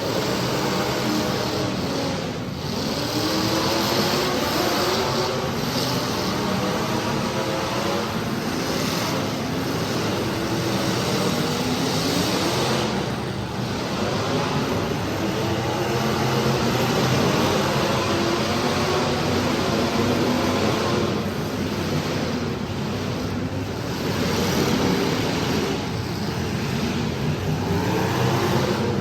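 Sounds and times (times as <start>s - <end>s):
car engines revving: 0.0s - 29.0s.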